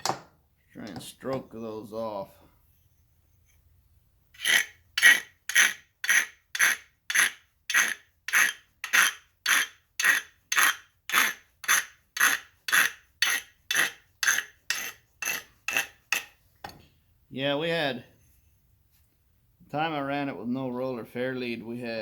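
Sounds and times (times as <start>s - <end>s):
rasp filing metal: 4.4s - 16.4s.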